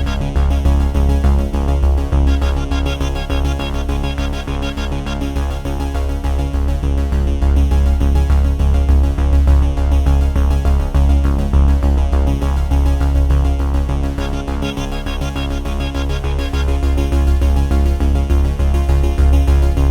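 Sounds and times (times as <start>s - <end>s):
electronic synthesizer music: 0.0s - 6.8s, 12.6s - 19.9s.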